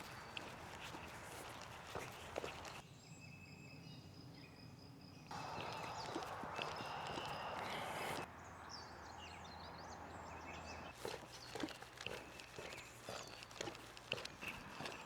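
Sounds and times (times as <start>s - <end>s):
birds chirping: 0.0s - 2.8s, 4.2s - 15.0s
footsteps on a trail: 0.0s - 2.8s, 5.3s - 8.3s, 10.8s - 15.0s.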